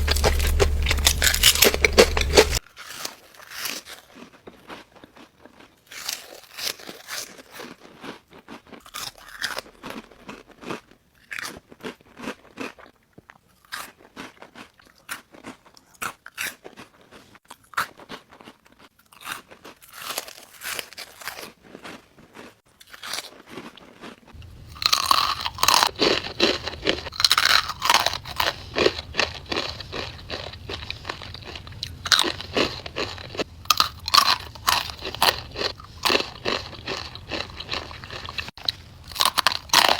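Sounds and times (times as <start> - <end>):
chips being crunched and chewed: 0.0 - 39.9.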